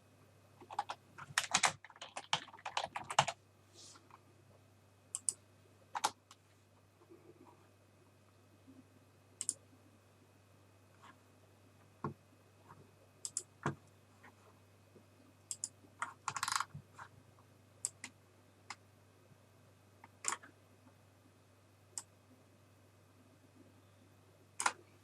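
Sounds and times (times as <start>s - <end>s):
computer keyboard keys clicking: 0.6s - 3.4s, 5.2s - 5.4s, 6.0s - 6.2s, 13.2s - 13.5s, 15.5s - 15.7s, 20.2s - 20.4s.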